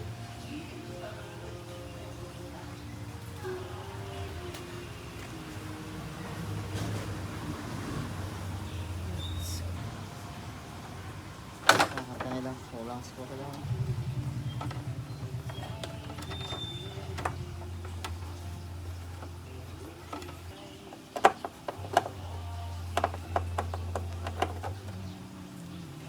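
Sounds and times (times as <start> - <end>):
washing machine motor hum: 0.0 - 26.0
mechanical clicks and knocks: 11.5 - 12.6, 13.4 - 25.2.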